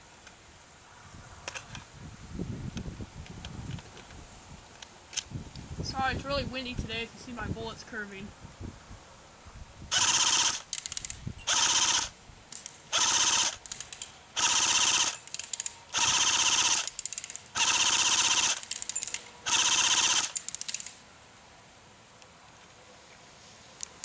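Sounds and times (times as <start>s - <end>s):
airsoft rifle bursts: 9.9s - 21.0s.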